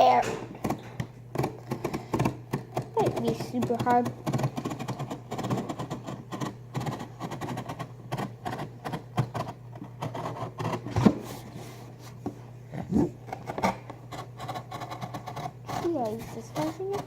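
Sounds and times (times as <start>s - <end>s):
steady low hum: 0.0s - 17.0s
box cutter slicing cardboard: 12.9s - 17.0s.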